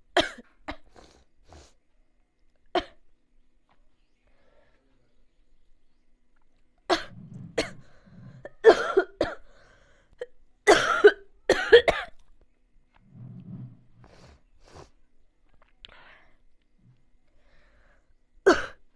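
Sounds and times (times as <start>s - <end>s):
person coughing: 6.9s - 7.9s, 8.5s - 9.5s, 18.5s - 18.8s.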